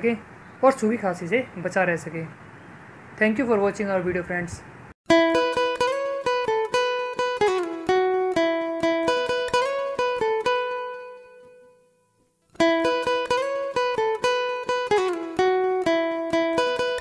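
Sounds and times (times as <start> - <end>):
plucked guitar music: 5.1 - 17.0.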